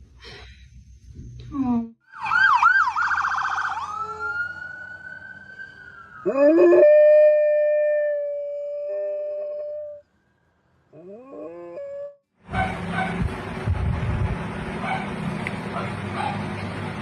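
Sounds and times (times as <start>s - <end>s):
siren warbling and wailing: 2.0s - 10.0s
dog howling: 6.2s - 10.0s.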